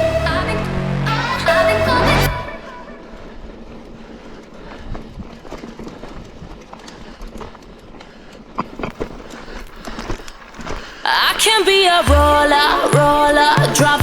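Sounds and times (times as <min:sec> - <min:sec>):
music: 0:00.0 - 0:02.6, 0:12.1 - 0:14.0
bike tyre and trail noise: 0:03.0 - 0:11.3
bike knocks and rattles: 0:03.7 - 0:10.8.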